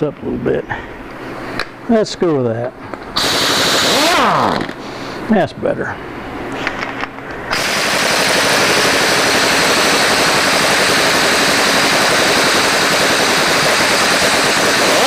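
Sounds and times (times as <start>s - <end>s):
power ratchet running: 3.2s - 4.8s, 7.5s - 15.0s.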